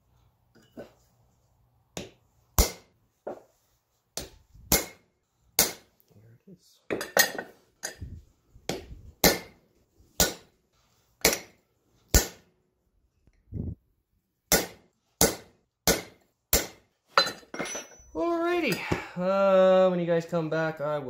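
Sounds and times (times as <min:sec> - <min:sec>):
hammer striking steel on anvil: 0:02.0 - 0:02.9, 0:04.2 - 0:05.0, 0:05.6 - 0:05.9, 0:08.7 - 0:09.6, 0:10.2 - 0:10.6, 0:11.2 - 0:12.5, 0:14.5 - 0:19.0.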